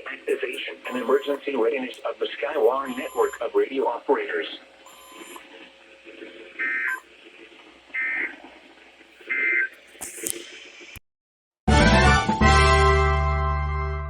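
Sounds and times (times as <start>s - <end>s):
faint radio hiss: 0.0s - 11.0s
buzzy digital tones: 0.3s - 1.7s, 2.5s - 3.5s, 4.9s - 5.4s.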